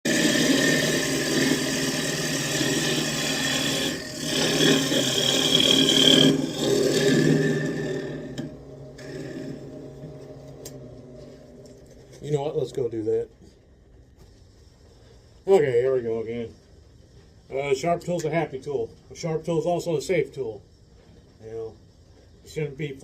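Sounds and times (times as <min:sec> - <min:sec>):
gouge cutting wood: 0:00.0 - 0:10.3
wood lathe spinning: 0:00.0 - 0:12.8.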